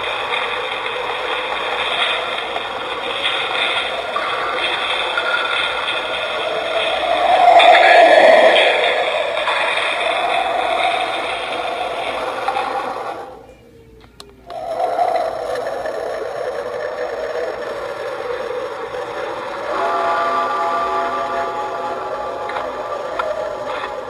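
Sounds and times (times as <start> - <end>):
spooky scraping hissing effect: 0.0 - 13.4, 14.5 - 24.0
steady buzzing tone: 16.6 - 24.0.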